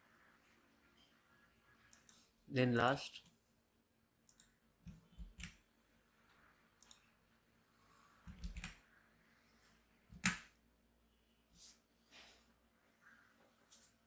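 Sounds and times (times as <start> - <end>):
computer clicks: 4.2 - 5.6, 6.8 - 7.1, 8.3 - 8.8.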